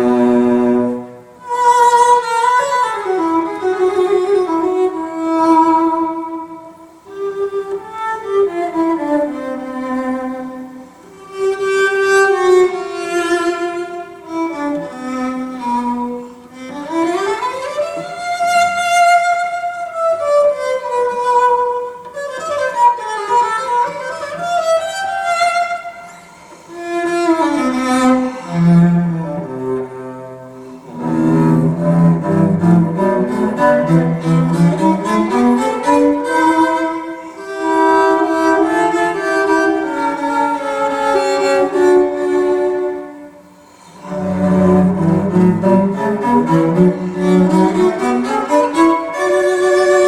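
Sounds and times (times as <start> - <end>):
violin melody over strings: 0.0 - 50.0.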